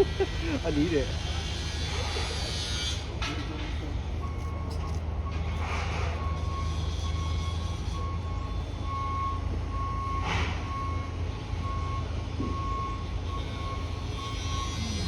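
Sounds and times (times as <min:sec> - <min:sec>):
vehicle warning alarm beeping: 0:03.8 - 0:15.0.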